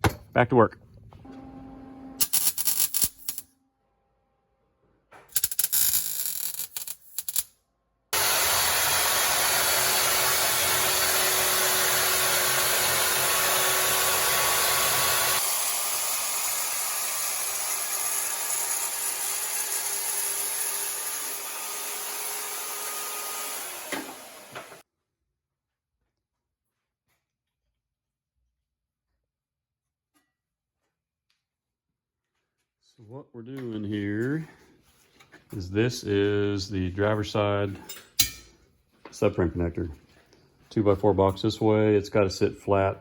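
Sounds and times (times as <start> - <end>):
power tool harsh hiss: 8.2 - 24.8.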